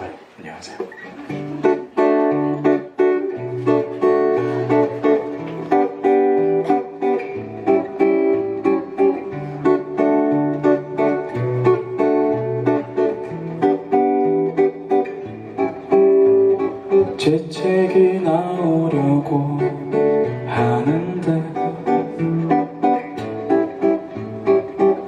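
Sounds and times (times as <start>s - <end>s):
acoustic guitar strumming chords: 0.0s - 25.0s.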